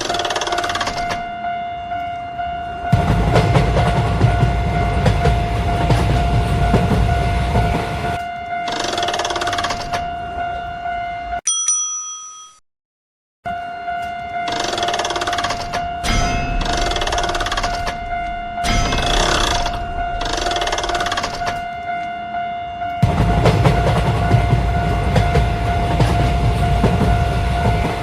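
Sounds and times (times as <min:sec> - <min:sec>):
level crossing bell ringing: 0:00.0 - 0:12.6, 0:13.5 - 0:28.0
train rushing past: 0:02.8 - 0:09.8, 0:23.0 - 0:28.0.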